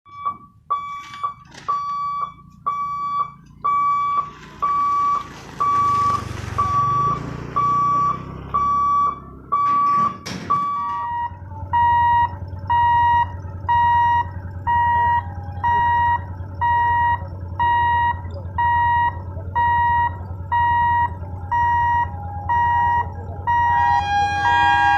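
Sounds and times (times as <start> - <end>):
warning buzzer beeping: 0.1 - 24.9
low steady hum: 10.6 - 24.9.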